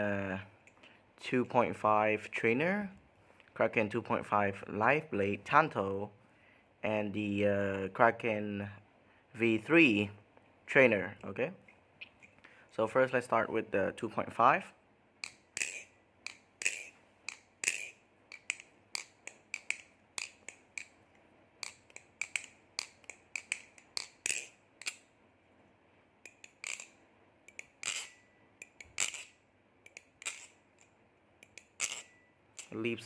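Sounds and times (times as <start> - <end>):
metal clacks of flipping knife handles: 15.2 - 21.0, 21.6 - 25.1, 26.2 - 32.9.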